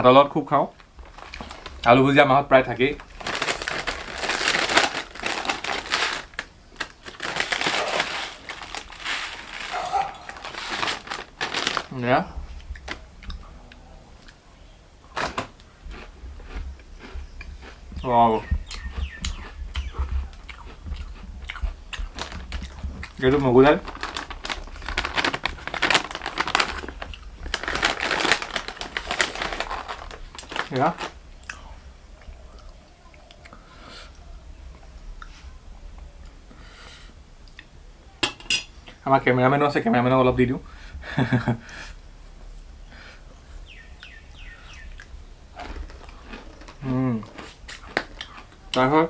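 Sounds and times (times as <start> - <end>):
plastic snack packet crinkling: 0.8 - 12.2, 15.2 - 16.0, 22.0 - 31.2, 45.6 - 48.6.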